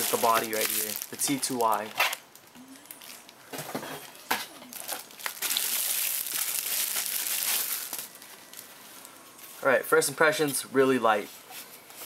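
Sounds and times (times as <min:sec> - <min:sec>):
packaging crinkling: 0:00.0 - 0:03.4, 0:04.6 - 0:08.8.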